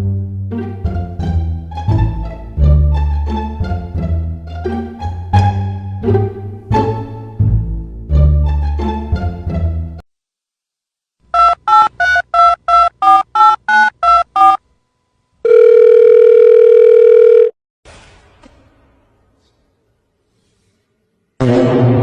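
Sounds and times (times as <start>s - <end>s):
steady telephone tone: 11.4s - 14.6s, 15.4s - 17.6s
telephone keypad beeps: 11.4s - 14.6s, 15.5s - 17.5s.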